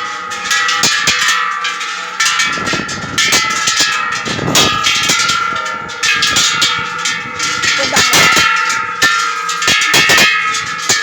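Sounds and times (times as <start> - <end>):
metal bells struck: 0.0 - 11.0.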